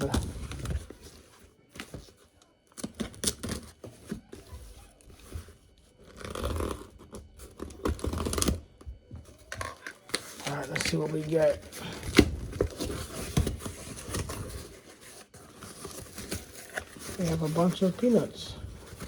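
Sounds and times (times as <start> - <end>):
cardboard box being opened: 9.6 - 19.0.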